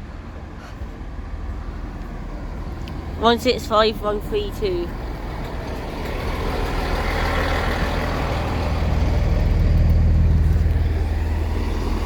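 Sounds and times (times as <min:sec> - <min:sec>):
diesel engines throbbing: 0:00.0 - 0:12.0.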